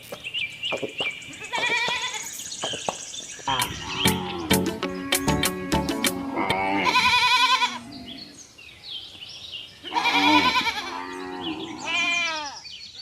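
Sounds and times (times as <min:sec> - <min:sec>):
farm animal quavering calls: 0:03.5 - 0:08.4, 0:09.8 - 0:12.6.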